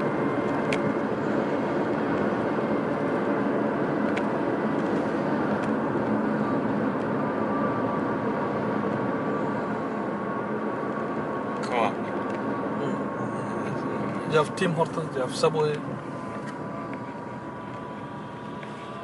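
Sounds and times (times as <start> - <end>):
car road and engine noise: 0.0 - 19.0.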